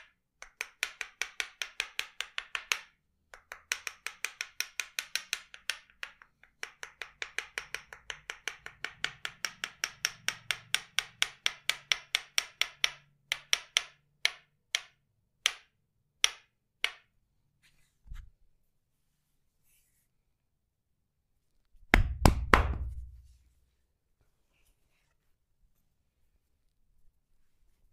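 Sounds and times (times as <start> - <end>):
wooden mallet knocking on wood: 6.7 - 17.1, 21.9 - 23.2.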